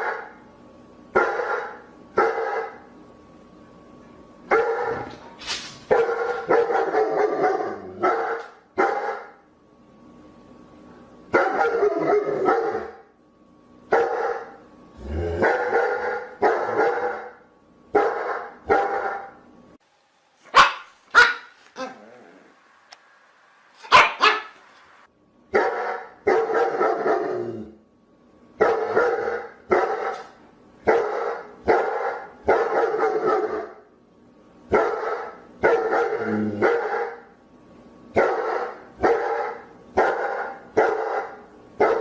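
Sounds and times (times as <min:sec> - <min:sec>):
dogs barking: 0:01.2 - 0:02.8, 0:04.5 - 0:05.2, 0:05.9 - 0:09.4, 0:11.3 - 0:13.0, 0:13.9 - 0:14.6, 0:15.4 - 0:19.4, 0:20.5 - 0:21.9, 0:23.8 - 0:24.6, 0:25.5 - 0:27.4, 0:28.6 - 0:33.8, 0:34.7 - 0:37.3, 0:38.2 - 0:42.0.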